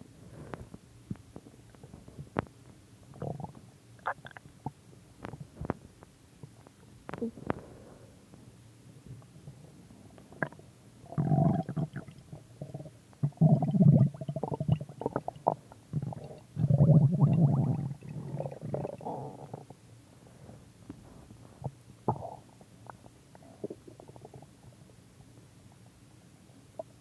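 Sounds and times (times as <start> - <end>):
stomach growling: 3.1 - 5.8, 10.3 - 19.8, 21.6 - 24.9.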